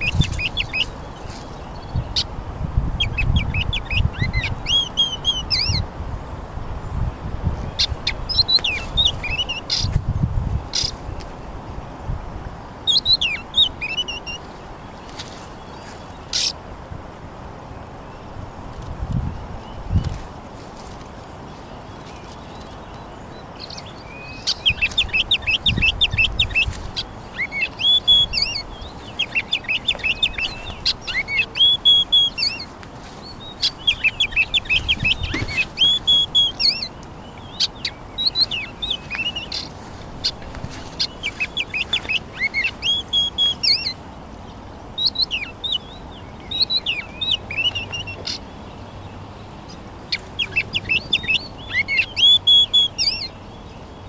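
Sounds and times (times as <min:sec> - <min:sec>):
small birds chirping: 0:00.0 - 0:12.0, 0:12.8 - 0:16.8, 0:17.7 - 0:54.0
steady background hiss: 0:00.0 - 0:54.0.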